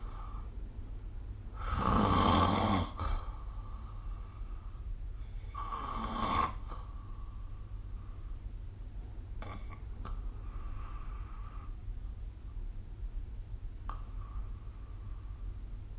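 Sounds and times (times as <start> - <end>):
low steady hum: 0.0 - 15.9
person snoring: 1.6 - 3.3, 5.4 - 6.8.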